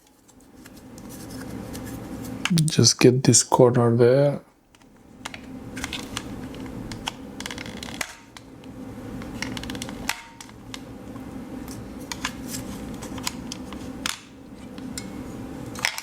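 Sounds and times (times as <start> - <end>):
low steady hum: 2.3 - 7.4.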